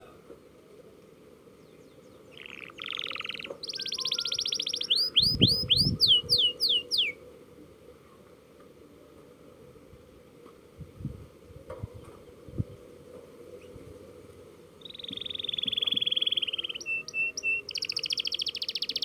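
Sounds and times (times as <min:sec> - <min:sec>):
canary singing: 0:02.3 - 0:07.2, 0:14.8 - 0:19.0.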